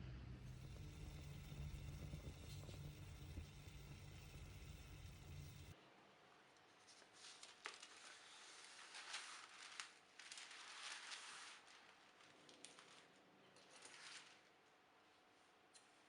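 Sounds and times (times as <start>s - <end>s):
faint rustling and crinkling: 6.6s - 16.0s.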